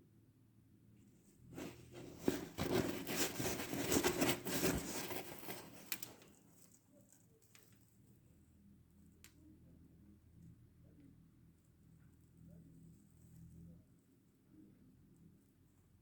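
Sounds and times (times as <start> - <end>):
crackling rustling noise: 1.6 - 6.8.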